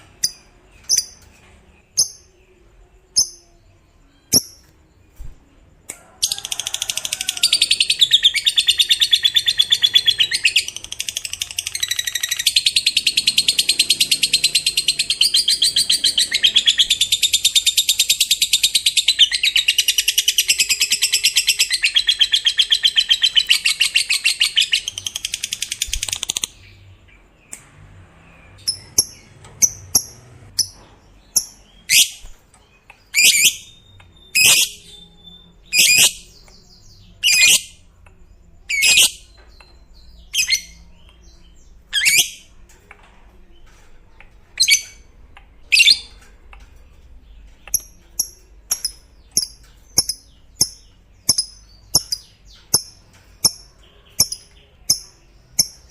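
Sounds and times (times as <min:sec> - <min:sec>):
shrill bird calls: 0:41.9 - 0:42.5.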